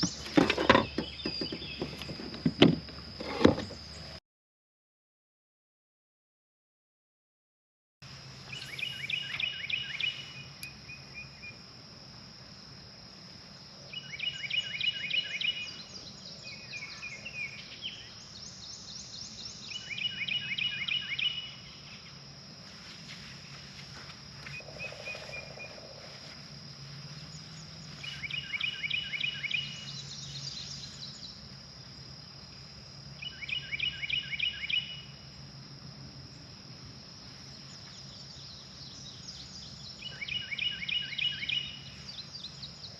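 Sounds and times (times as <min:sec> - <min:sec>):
high insect drone: 0:00.0 - 0:04.2, 0:08.0 - 0:42.9
other birds chirping: 0:24.4 - 0:26.4.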